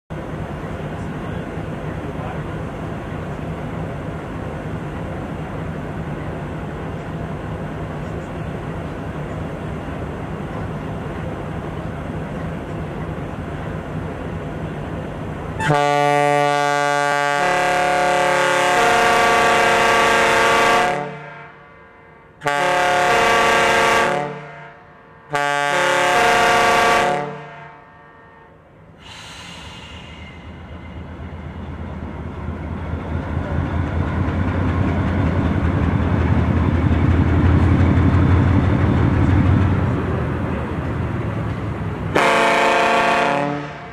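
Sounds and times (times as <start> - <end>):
diesel locomotive idling: 0.1 - 18.8, 27.8 - 43.9
locomotive horn chord blasts: 15.6 - 28.6, 42.1 - 43.9.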